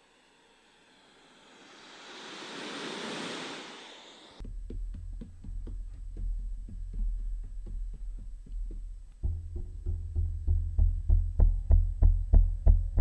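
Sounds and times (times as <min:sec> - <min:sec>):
whoosh of noise: 0:00.0 - 0:04.4
music with deep bass and beat: 0:04.4 - 0:13.0.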